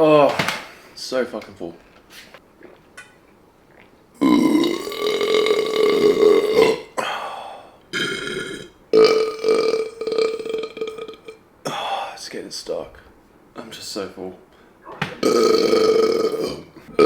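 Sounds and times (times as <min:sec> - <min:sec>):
man burping loudly: 0:04.2 - 0:12.0, 0:14.8 - 0:17.0.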